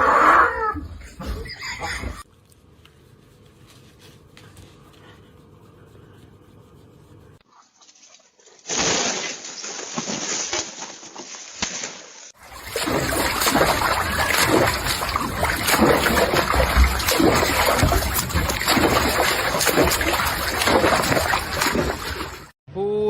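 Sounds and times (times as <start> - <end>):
water splashing and sloshing: 7.4 - 22.6.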